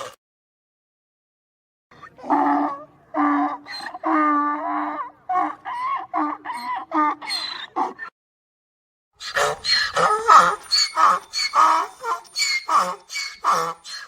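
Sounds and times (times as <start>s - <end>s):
donkey braying: 9.2s - 14.0s.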